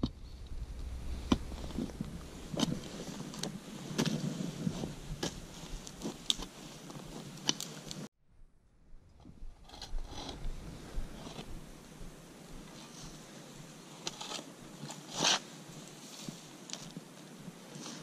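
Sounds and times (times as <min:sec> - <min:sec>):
hand tool scraping into soil: 0:14.0 - 0:16.8.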